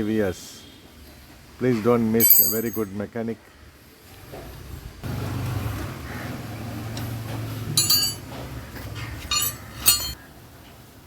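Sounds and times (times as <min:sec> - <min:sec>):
metal tools clinking: 0:02.2 - 0:02.9, 0:07.7 - 0:10.2.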